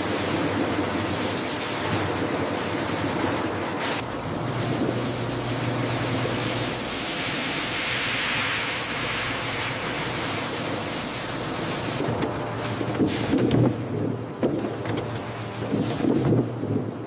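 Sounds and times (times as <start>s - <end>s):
low machine hum: 0.0s - 17.0s
high-pressure water spray hissing: 4.6s - 12.0s.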